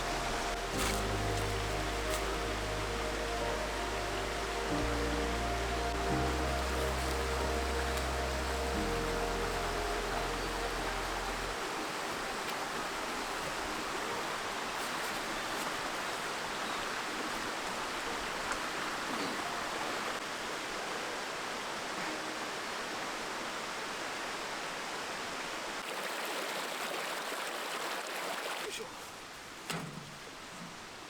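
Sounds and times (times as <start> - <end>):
low background music: 0.0 - 15.1
flowing stream: 0.0 - 31.0.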